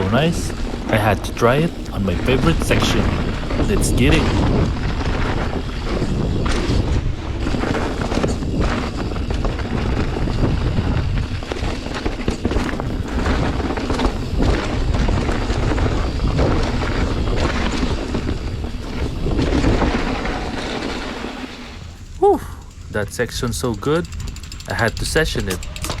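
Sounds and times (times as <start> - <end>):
bike knocking and rattling: 0.0 - 26.0
bike tyre roar: 0.0 - 26.0
wind buffeting microphone: 0.0 - 26.0.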